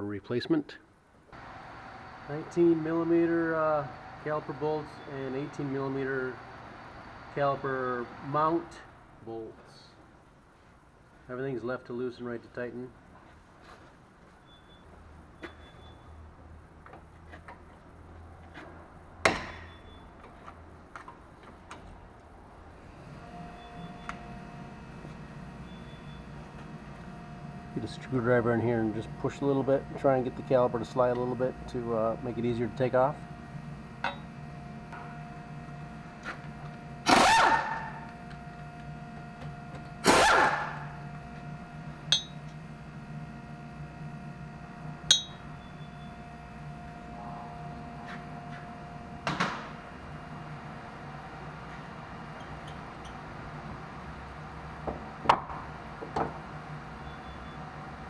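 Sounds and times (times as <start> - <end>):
light metal clink: 42.1 - 42.4, 45.1 - 45.4.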